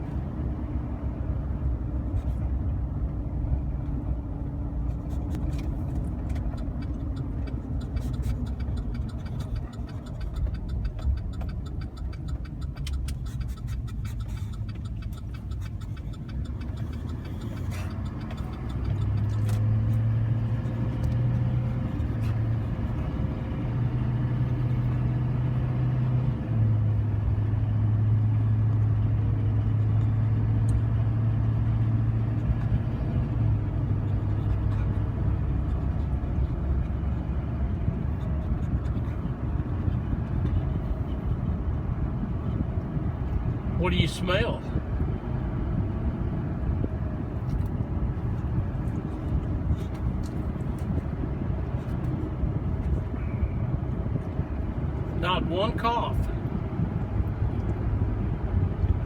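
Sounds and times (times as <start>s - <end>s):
engine rumbling: 0.0s - 59.0s
scattered clicks: 5.3s - 19.6s.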